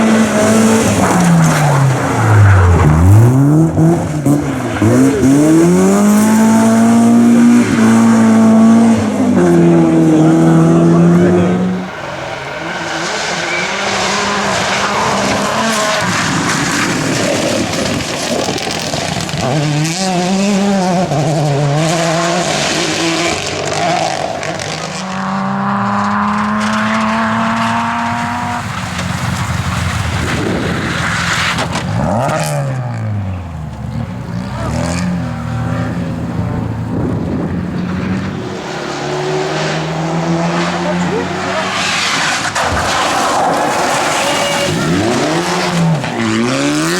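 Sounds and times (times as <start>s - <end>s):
rally car engines revving: 0.0s - 46.9s
car sweeping past: 34.3s - 46.9s.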